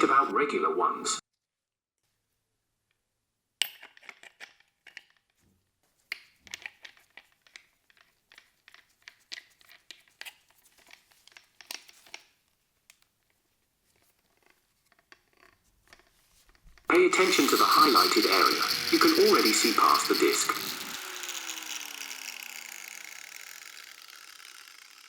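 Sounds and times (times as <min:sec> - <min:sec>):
light clicks and crinkles: 0:03.8 - 0:16.9.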